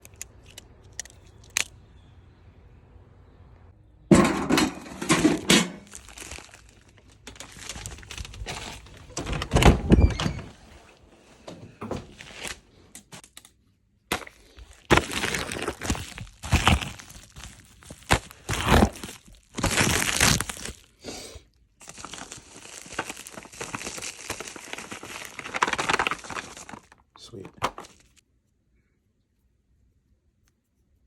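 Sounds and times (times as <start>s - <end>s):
packaging rustling and crinkling: 5.0s - 9.3s, 11.9s - 13.4s, 14.1s - 21.0s, 21.8s - 28.2s.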